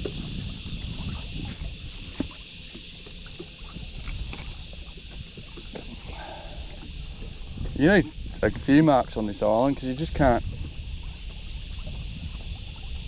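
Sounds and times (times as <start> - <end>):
water lapping against boat hull: 0.0 - 13.0
wind rumble on microphone: 0.0 - 13.0
clicks and knocks in boat: 1.4 - 6.1.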